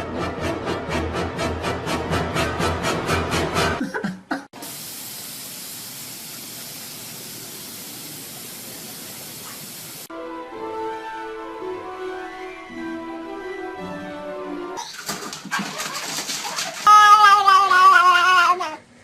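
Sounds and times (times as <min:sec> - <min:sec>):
steady hiss: 0:04.6 - 0:10.1.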